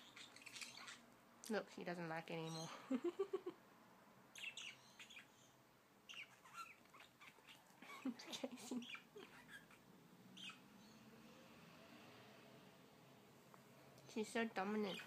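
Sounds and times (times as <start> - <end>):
budgerigars chirping softly: 0.0 - 1.1, 4.3 - 11.1, 14.1 - 15.0.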